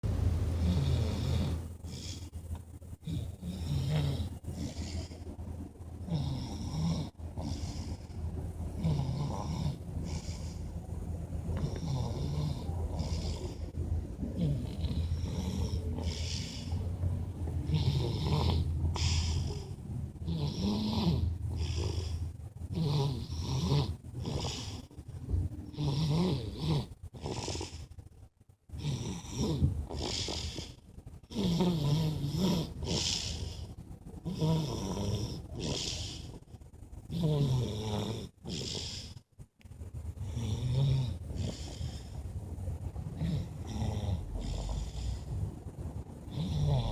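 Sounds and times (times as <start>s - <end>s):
person snoring: 0.6s - 2.4s, 3.0s - 5.2s, 14.3s - 16.8s, 17.6s - 24.9s, 25.7s - 27.8s, 28.8s - 36.4s, 37.1s - 39.2s, 40.2s - 42.2s, 46.3s - 46.9s.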